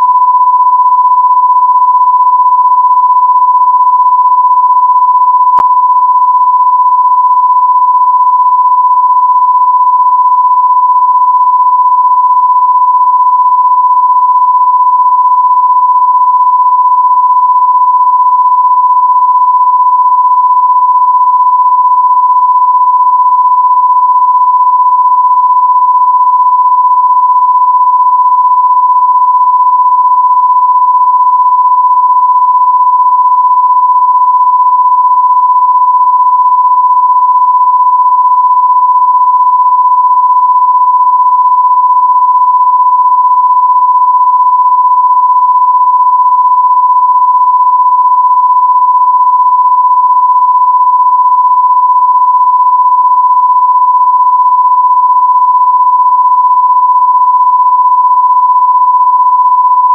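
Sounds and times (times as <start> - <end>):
sine-wave test tone: 0.0 - 59.9.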